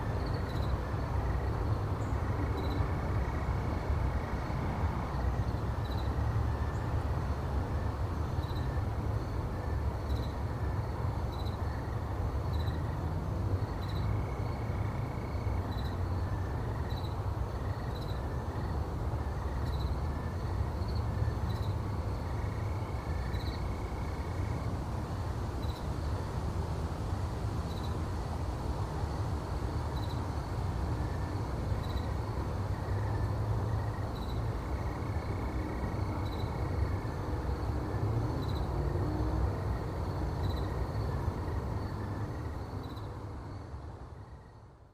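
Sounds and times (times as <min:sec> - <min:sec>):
crickets chirping: 0:00.0 - 0:44.9.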